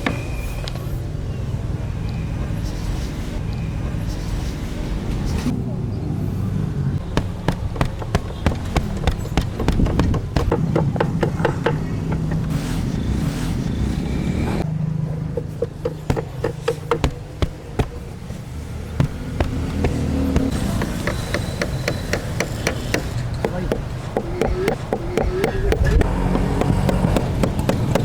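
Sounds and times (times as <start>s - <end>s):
sharp taps and clicks: 19.0s - 28.0s.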